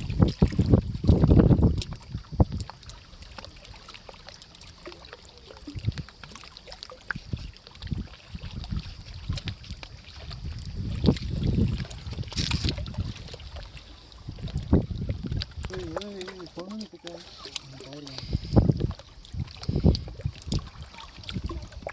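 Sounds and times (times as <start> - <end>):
wind rumble on microphone: 0.0 - 3.0, 5.6 - 6.4, 7.0 - 16.8, 17.9 - 21.9
water sloshing and splashing: 0.0 - 21.9.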